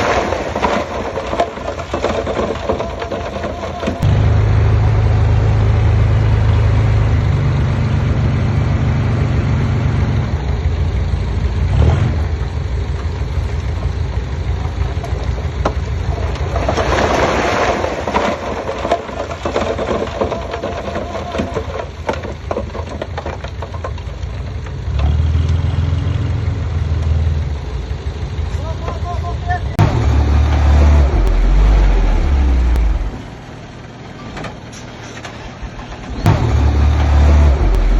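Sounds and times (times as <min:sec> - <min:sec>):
metal clanks and knocks: 0:00.0 - 0:04.1, 0:14.6 - 0:24.5, 0:34.1 - 0:37.9
diesel engine droning: 0:03.3 - 0:37.9.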